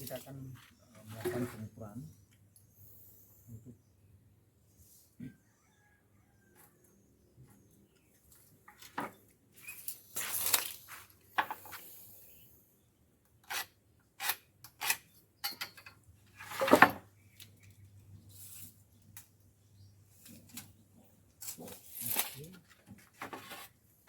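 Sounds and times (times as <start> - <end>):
tools and wood knocking: 15.4 - 17.0.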